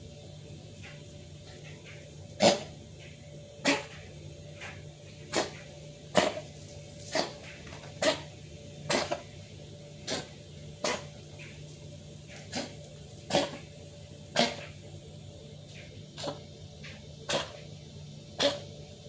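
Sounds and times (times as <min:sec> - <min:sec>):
kitten coughing: 0:06.2 - 0:06.4, 0:08.9 - 0:09.2, 0:10.1 - 0:11.1, 0:13.3 - 0:13.6, 0:14.4 - 0:14.7, 0:17.3 - 0:17.6, 0:18.4 - 0:18.7.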